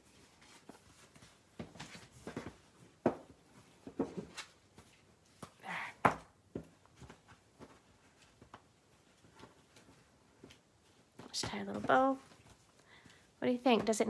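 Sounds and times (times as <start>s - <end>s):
paper rustling: 0.0s - 2.8s.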